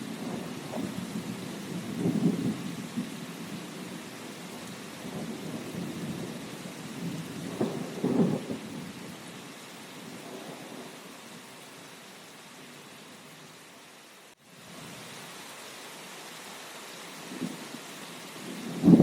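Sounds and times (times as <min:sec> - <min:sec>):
steady rain: 0:00.0 - 0:19.0
thunder rumbling: 0:00.1 - 0:04.0, 0:05.0 - 0:09.0, 0:18.4 - 0:19.0.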